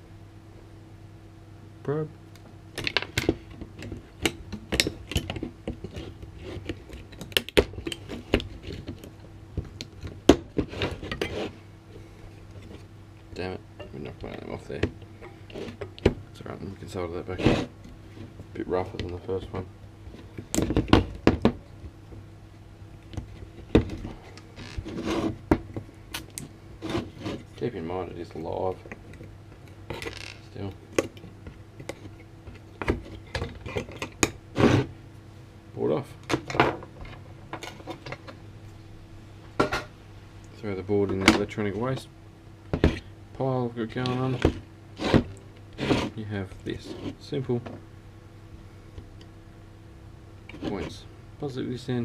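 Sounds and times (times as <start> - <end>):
tool scraping circuit board: 5.8 - 7.1, 10.6 - 11.6, 17.2 - 17.8, 24.6 - 25.4, 26.8 - 27.7, 34.6 - 34.9, 43.9 - 47.3.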